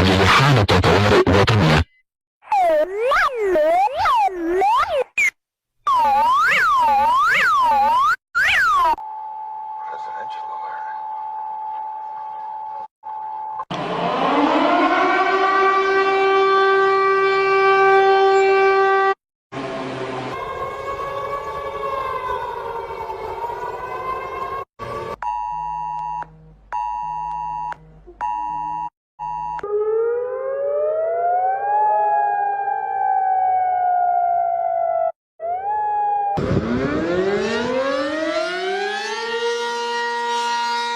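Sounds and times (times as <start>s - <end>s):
rising siren-like tone: 2.5s - 9.0s, 13.6s - 25.2s, 29.6s - 40.9s
tones gliding upward: 2.5s - 9.0s, 34.6s - 40.9s.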